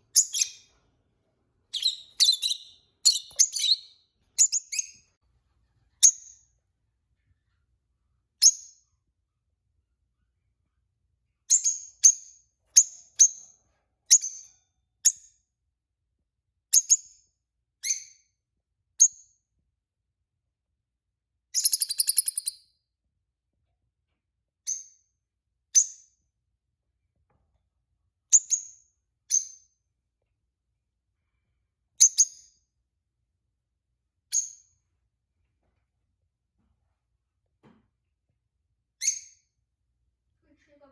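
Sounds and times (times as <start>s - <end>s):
lovebird chirping: 0.0s - 0.7s, 1.7s - 5.0s, 21.6s - 22.6s.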